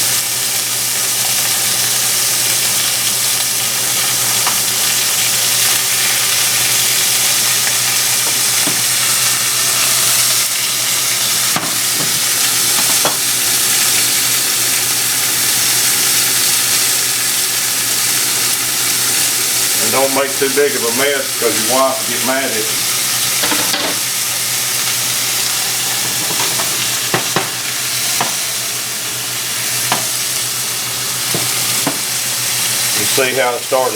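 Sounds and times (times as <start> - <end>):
meat sizzling in oil: 0.0 - 33.9.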